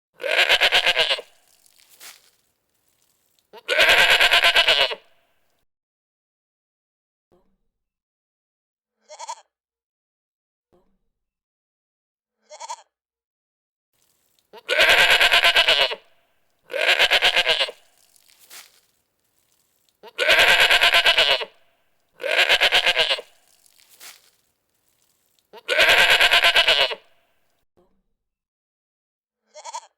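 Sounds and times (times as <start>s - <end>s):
goats bleating: 0.2s - 1.6s, 3.6s - 5.2s, 14.6s - 16.1s, 16.7s - 18.2s, 20.0s - 21.6s, 22.2s - 23.6s, 25.6s - 27.2s.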